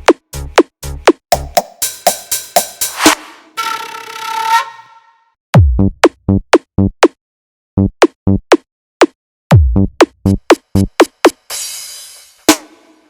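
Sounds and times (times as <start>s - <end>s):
deep kick drums dropping in pitch: 5.6s - 7.2s, 7.8s - 8.6s, 9.5s - 11.0s.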